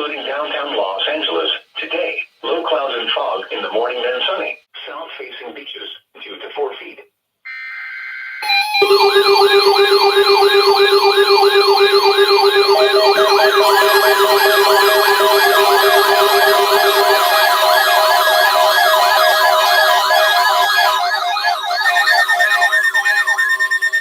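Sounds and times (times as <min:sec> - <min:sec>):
electronic siren whoop: 0:07.5 - 0:24.0
steady low alert tone: 0:08.4 - 0:22.0.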